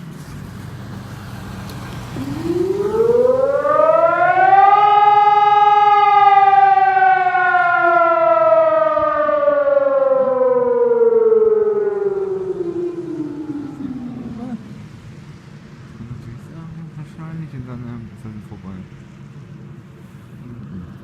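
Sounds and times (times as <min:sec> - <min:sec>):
warning siren rising and falling: 0:02.0 - 0:15.8.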